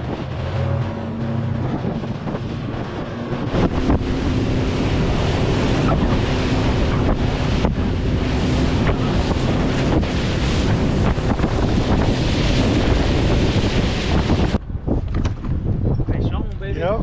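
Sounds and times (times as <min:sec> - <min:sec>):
water rushing along hull: 0:00.0 - 0:14.6
wind buffeting microphone: 0:00.0 - 0:17.0.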